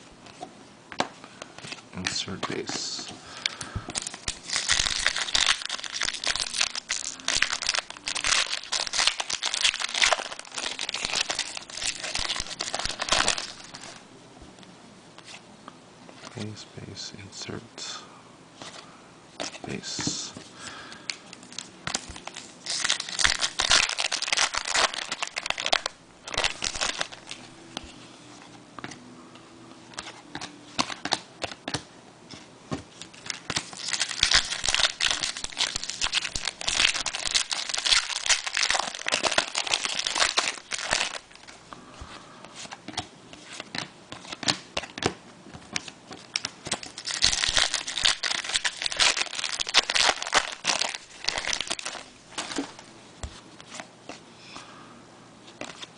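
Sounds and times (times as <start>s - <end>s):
wrappers tearing and crinkling: 4.0s - 14.0s, 21.3s - 27.5s, 33.0s - 41.6s, 46.2s - 52.8s.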